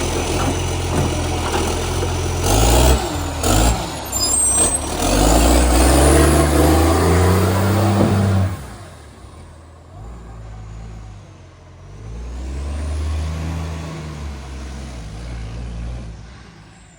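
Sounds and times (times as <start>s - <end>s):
garbage truck diesel engine running: 0.0s - 12.0s.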